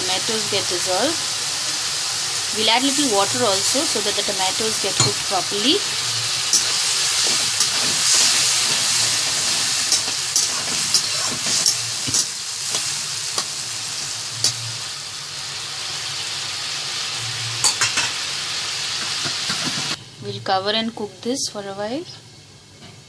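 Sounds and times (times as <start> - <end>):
tomatoes sizzling in oil: 0.0 - 23.0.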